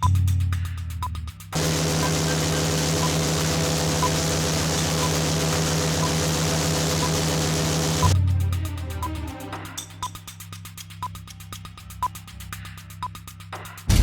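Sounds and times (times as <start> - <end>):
wind machine rushing: 1.6 - 8.2
low droning hum: 1.6 - 8.8.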